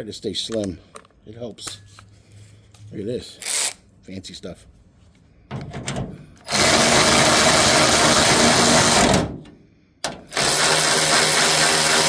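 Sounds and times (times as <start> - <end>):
power drill motor running: 6.4 - 9.2, 10.3 - 12.0.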